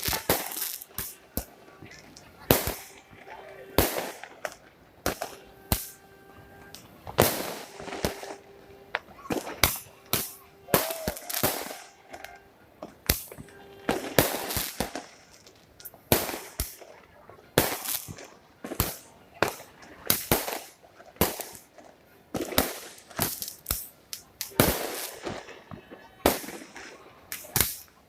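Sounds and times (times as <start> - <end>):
fireworks bangs: 0.0 - 28.0
hissing crackle: 0.0 - 28.0
faint horn-like tone: 5.4 - 6.9, 7.7 - 12.6, 13.4 - 14.2.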